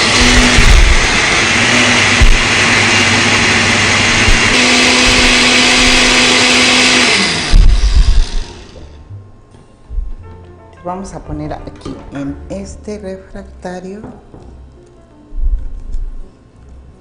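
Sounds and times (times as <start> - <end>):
kitchen blender running: 0.0 - 9.0
low thumps: 0.1 - 2.9, 4.1 - 5.4, 7.4 - 8.5, 9.9 - 10.3.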